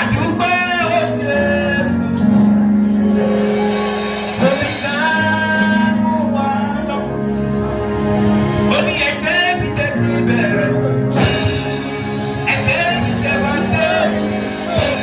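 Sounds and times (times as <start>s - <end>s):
instrumental backing: 0.0s - 15.0s.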